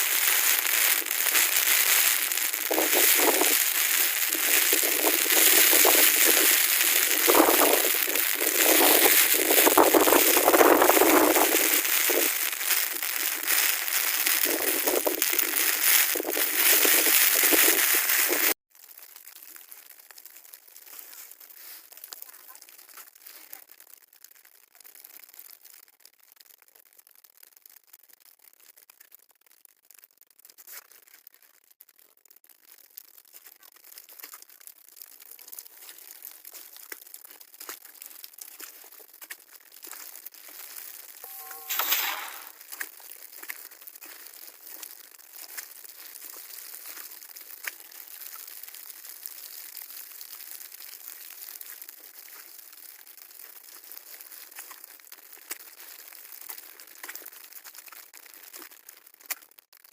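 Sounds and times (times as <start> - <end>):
storm wind and sleet on microphone: 0.0 - 18.6, 35.0 - 58.6
crackling and rustling: 0.0 - 59.9.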